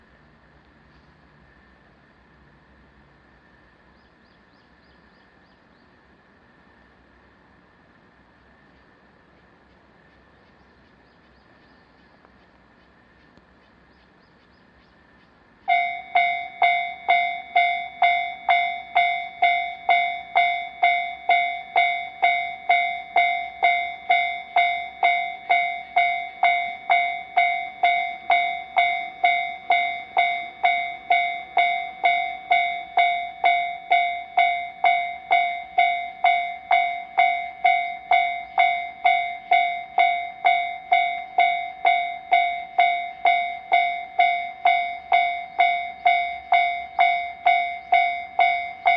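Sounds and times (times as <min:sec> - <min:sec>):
level-crossing warning bell ringing: 0:15.7 - 0:48.9.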